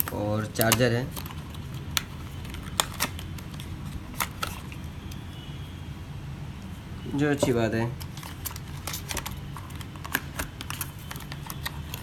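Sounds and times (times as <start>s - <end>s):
plastic parts clicking and tapping: 0.0s - 4.7s, 7.4s - 12.0s.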